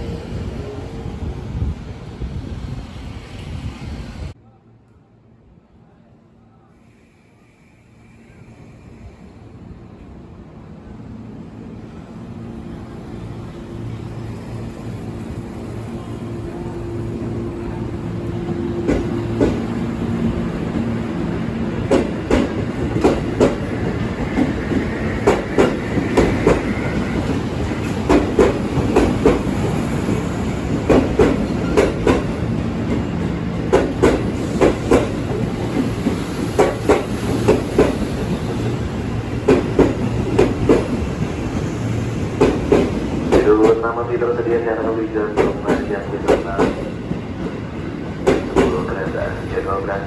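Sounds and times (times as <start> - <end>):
train wheels clacking over rails: 18.1 - 44.4, 45.1 - 49.7.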